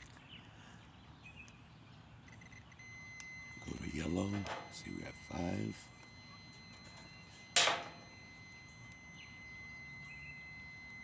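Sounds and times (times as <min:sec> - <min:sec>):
faint steady high whine: 0:02.2 - 0:11.0.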